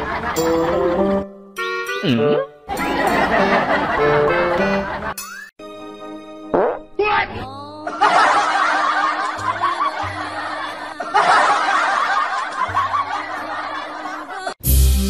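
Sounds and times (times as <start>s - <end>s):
many people laughing: 0.0s - 1.0s, 2.7s - 5.2s, 7.8s - 14.6s
background music: 0.0s - 15.0s.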